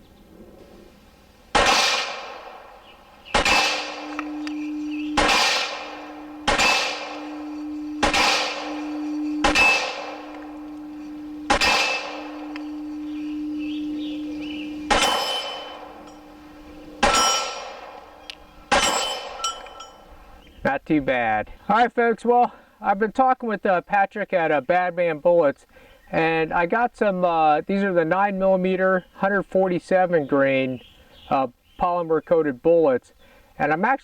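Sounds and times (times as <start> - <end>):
pistol shots: 1.5 - 16.0, 17.0 - 19.4
steel target ringing: 1.5 - 20.3
bullets clanging on steel targets: 3.3 - 12.8, 14.8 - 18.1, 18.7 - 20.2.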